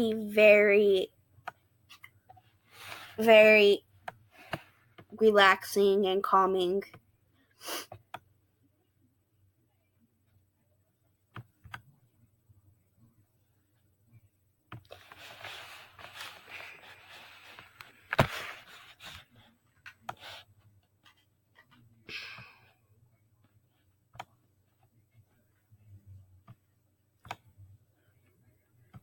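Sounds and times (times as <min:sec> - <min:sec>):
soft hissing noise: 0:14.9 - 0:19.3.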